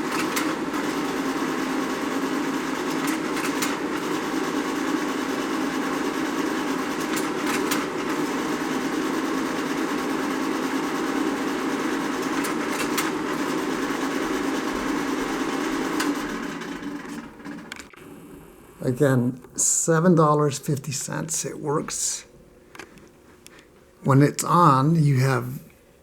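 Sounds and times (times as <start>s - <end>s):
sharp projector clicks: 0.0s - 18.4s
projector motor and fan hum: 0.0s - 26.0s.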